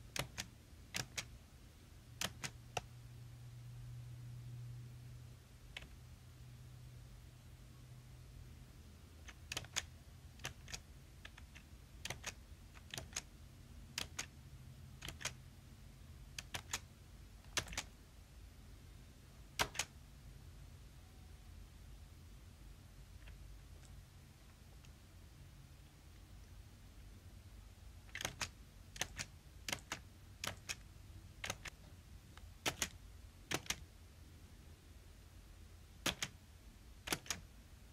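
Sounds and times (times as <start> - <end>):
sharp clicks in pairs: 0.1 - 1.3, 2.2 - 2.9, 9.2 - 13.3, 14.0 - 14.3, 15.0 - 15.4, 16.3 - 16.9, 17.5 - 17.9, 19.6 - 20.0, 28.0 - 33.9, 36.0 - 36.4, 37.0 - 37.5.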